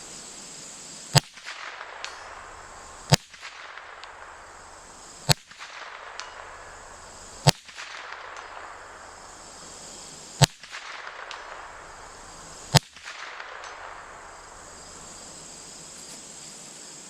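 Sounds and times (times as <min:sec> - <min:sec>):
rifle shots: 0:01.1 - 0:15.4
small rifle clicks: 0:12.7 - 0:14.0.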